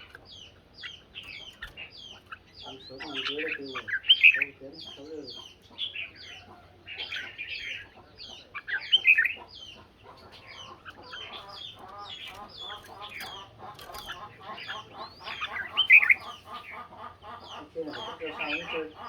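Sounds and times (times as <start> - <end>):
bulbuls singing and calling: 0.0 - 19.0.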